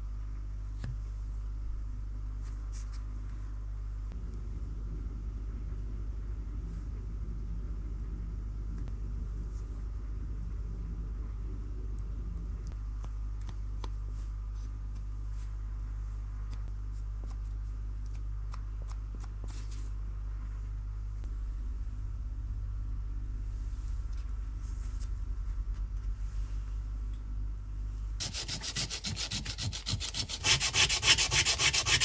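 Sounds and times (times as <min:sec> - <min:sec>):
electric machine humming: 0:28.2 - 0:32.0.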